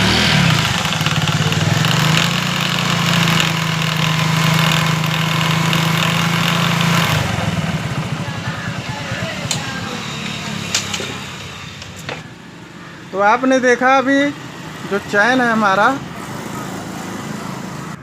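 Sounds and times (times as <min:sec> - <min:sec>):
drive chain grinding: 0:00.0 - 0:07.6
motorcycle engine running: 0:00.0 - 0:18.0.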